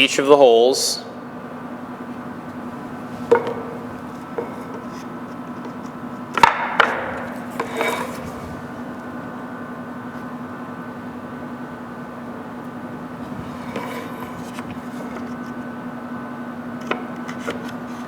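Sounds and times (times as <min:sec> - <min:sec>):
wooden parts knocking: 0:03.2 - 0:08.7, 0:13.2 - 0:15.4.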